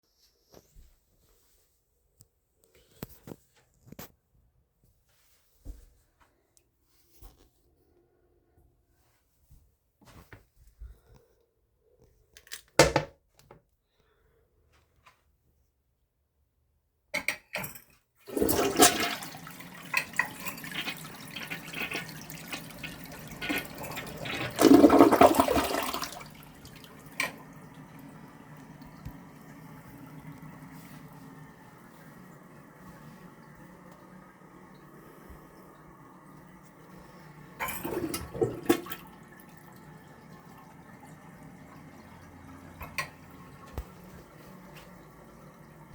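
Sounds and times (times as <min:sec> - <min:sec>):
toilet flushing: 0:18.2 - 0:45.9
toilet refill trickle: 0:18.2 - 0:45.9.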